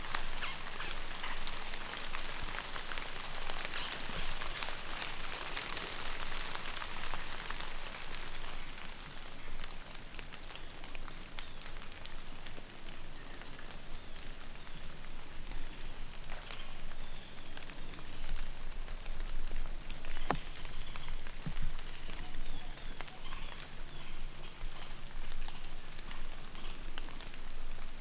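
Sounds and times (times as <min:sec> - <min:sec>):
rain hissing: 0:00.0 - 0:11.3
raindrops clicking: 0:00.0 - 0:28.0.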